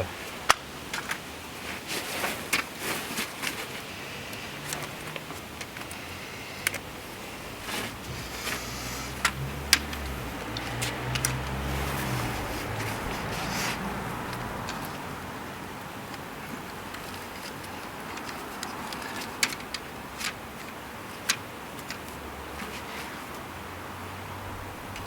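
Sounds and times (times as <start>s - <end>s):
low rumble: 24.4s - 25.0s.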